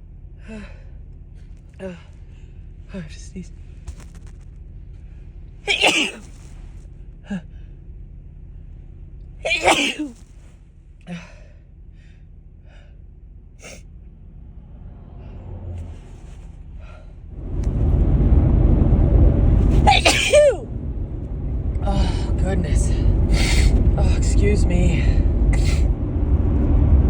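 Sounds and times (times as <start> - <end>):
woman sneezing: 5.7 - 6.3, 9.5 - 10.2, 19.8 - 20.6
loud low rumble: 10.2 - 27.0.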